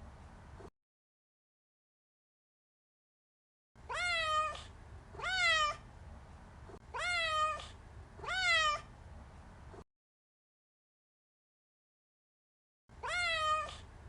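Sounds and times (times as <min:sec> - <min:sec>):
cat meowing: 0:03.8 - 0:05.8, 0:06.9 - 0:08.9, 0:13.0 - 0:13.9.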